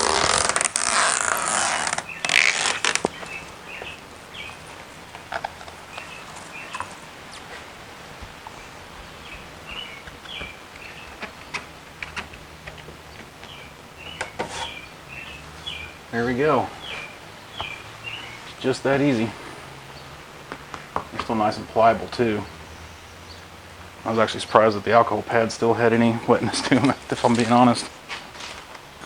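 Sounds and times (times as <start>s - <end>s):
loud rustling: 0.0s - 8.9s
small birds chirping: 0.0s - 28.0s.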